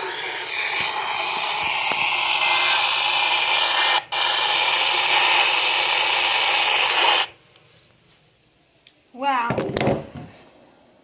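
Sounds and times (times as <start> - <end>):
radio static hiss: 0.0 - 7.4.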